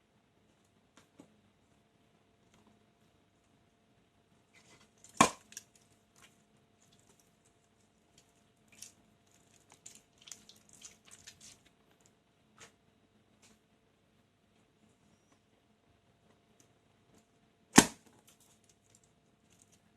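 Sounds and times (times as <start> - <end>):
balloon popping: 17.8 - 18.0.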